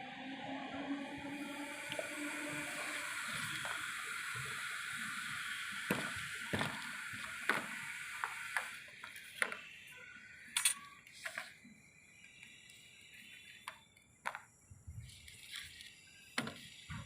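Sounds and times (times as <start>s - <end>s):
water hissing through pipe: 0.0s - 11.7s.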